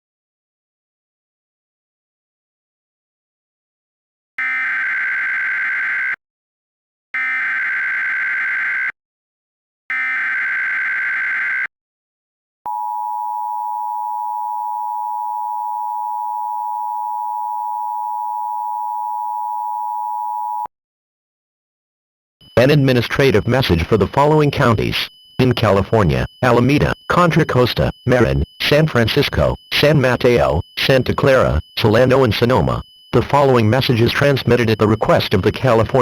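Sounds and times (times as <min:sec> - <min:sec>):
screeching digital data bursts: 0:22.5 - 0:36.0
two-tone attention signal: 0:22.5 - 0:36.0.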